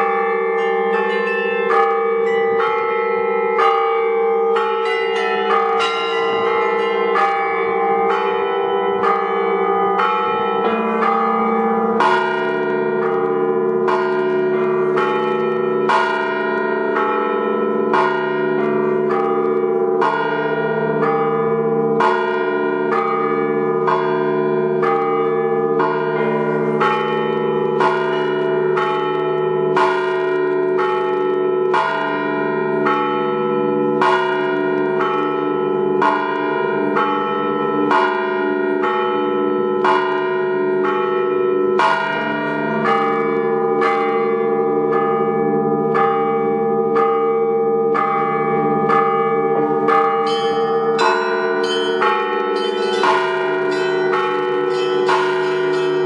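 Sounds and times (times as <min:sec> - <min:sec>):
deep bell: 0:00.0 - 0:56.0
large bells striking: 0:00.0 - 0:56.0
small bells ringing quickly: 0:50.3 - 0:56.0.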